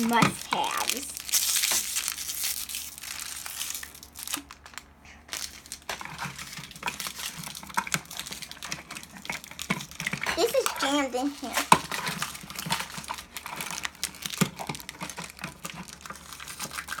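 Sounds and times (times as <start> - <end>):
plastic wrapping crinkling: 0.0 - 17.0.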